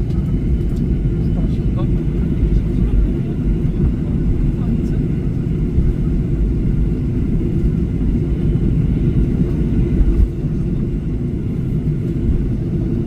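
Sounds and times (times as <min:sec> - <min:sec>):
airliner engines rumbling in cabin: 0:00.0 - 0:13.0.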